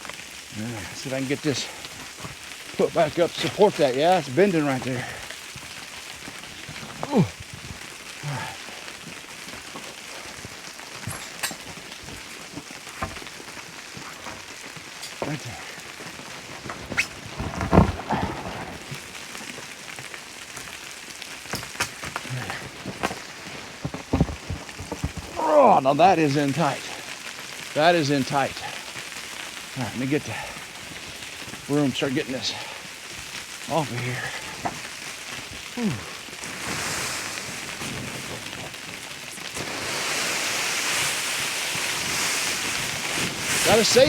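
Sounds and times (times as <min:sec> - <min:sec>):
sleet pattering: 0:00.4 - 0:20.8, 0:21.4 - 0:44.0
sleet hissing: 0:00.5 - 0:09.1, 0:15.0 - 0:19.4, 0:35.6 - 0:38.8, 0:39.5 - 0:44.0.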